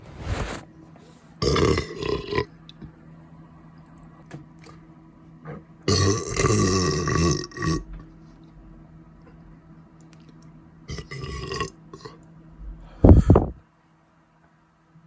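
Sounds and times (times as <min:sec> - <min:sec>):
person burping: 0:01.4 - 0:02.5, 0:05.9 - 0:07.9, 0:10.9 - 0:12.2.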